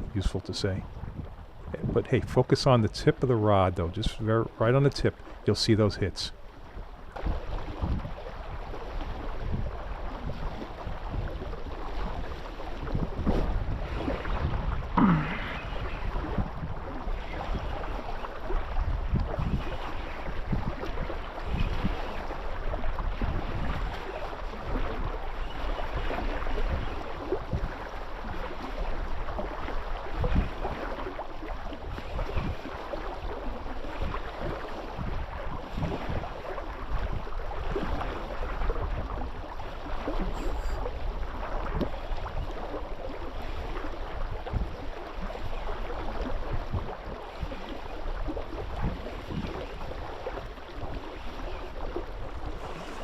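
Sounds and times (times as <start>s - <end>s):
water rushing: 0.0s - 18.7s, 35.6s - 53.0s
wind buffeting microphone: 0.0s - 53.0s.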